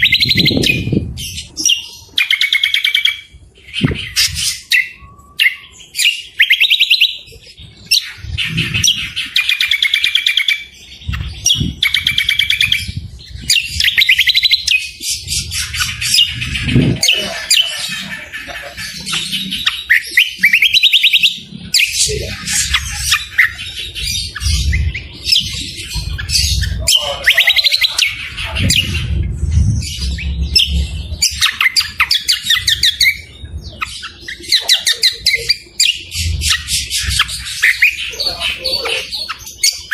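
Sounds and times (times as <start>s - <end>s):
songbirds trilling and chattering: 0.0s - 39.9s
low rumble: 14.9s - 19.6s, 21.4s - 38.4s.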